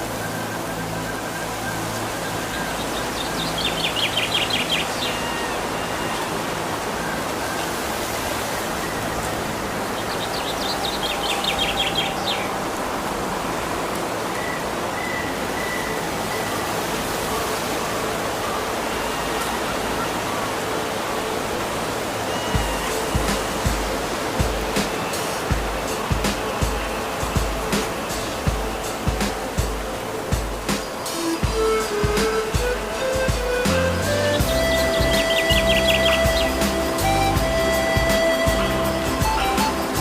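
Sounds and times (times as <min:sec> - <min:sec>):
faint whistled bird notes: 0:00.0 - 0:13.7, 0:30.8 - 0:40.0
flowing water: 0:00.0 - 0:40.0
songbird trilling: 0:02.3 - 0:06.5, 0:08.8 - 0:12.5, 0:31.8 - 0:40.0.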